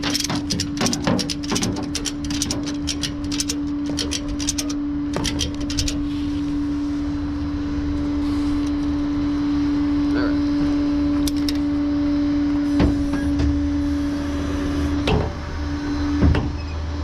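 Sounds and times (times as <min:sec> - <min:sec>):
ratchet strap clicking: 0:00.0 - 0:06.2
truck engine hum: 0:00.0 - 0:17.0.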